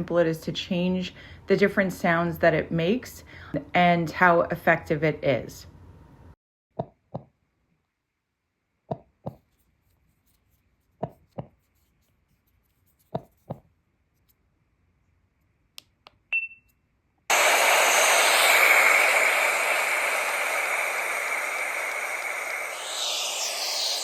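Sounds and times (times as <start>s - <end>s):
sound machine hiss: 17.3s - 24.0s.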